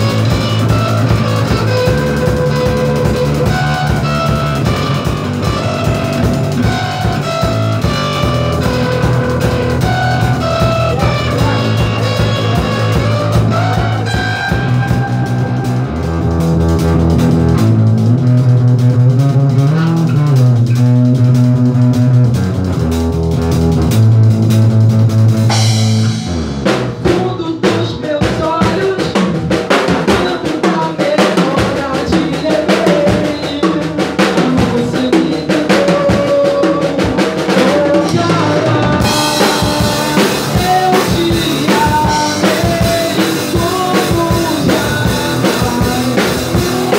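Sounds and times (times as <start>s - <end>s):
rock band playing live: 0.0s - 46.9s
cymbals washing: 25.5s - 27.2s.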